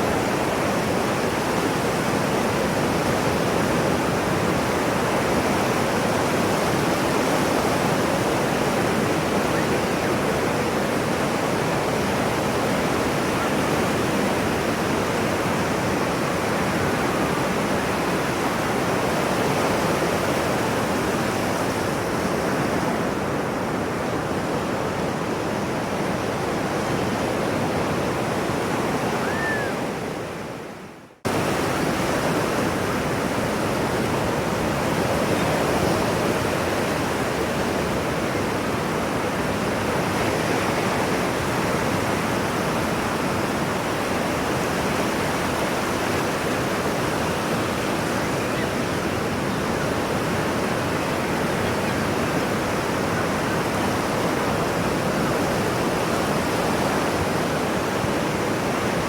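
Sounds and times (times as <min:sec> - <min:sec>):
ocean waves rushing: 0:31.3 - 0:59.0.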